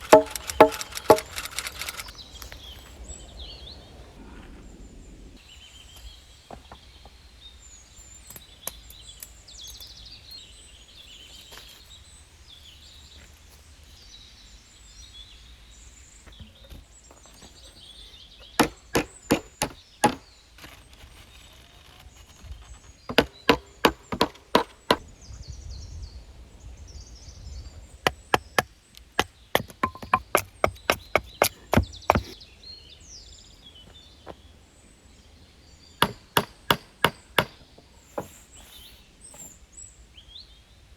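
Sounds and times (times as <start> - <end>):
chopping strikes on wood: 0.0 - 1.3, 18.6 - 20.3, 23.1 - 25.0, 29.2 - 32.4, 36.0 - 37.6
small birds chirping faintly: 0.0 - 40.9.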